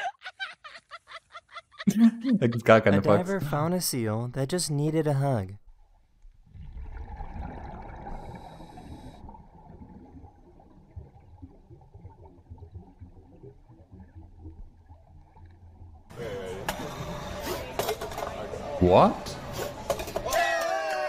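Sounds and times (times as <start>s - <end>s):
muffled water gurgling: 5.7s - 16.1s.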